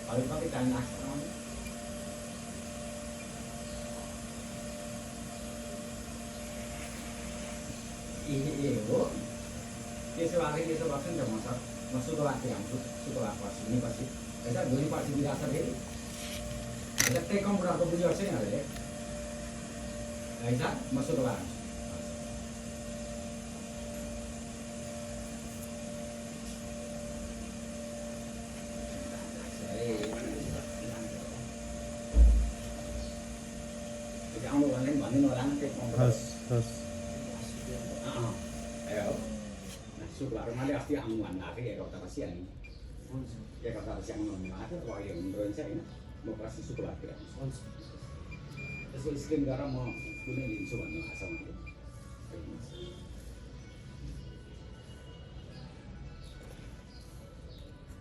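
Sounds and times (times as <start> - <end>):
machine hum: 0.0 - 41.0.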